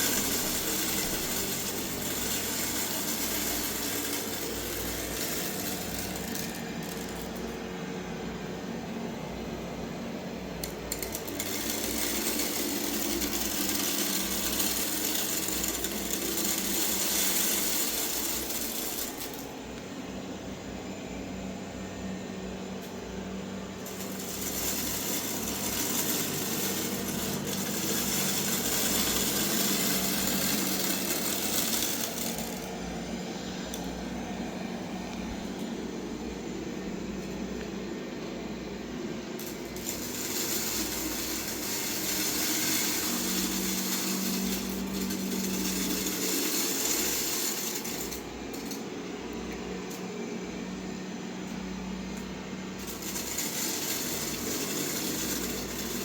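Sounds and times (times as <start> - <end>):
rice grains rattling in brushes: 0.0 - 8.0, 10.5 - 19.6, 23.8 - 35.7, 39.2 - 50.1, 52.2 - 56.0
robot vacuum motor humming: 0.0 - 19.9, 23.8 - 37.5, 39.0 - 56.0.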